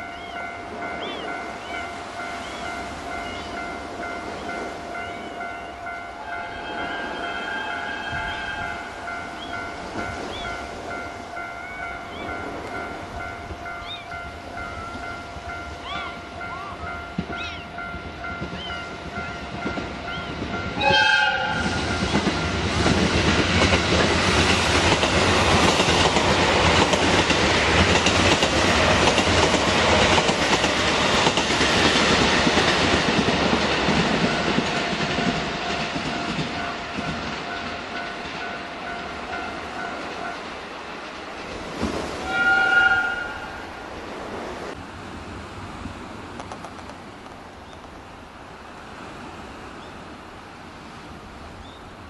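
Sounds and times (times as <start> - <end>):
train cars rumbling past: 0.0 - 52.0
train horn blast: 6.2 - 9.1, 20.8 - 22.1, 42.2 - 43.7.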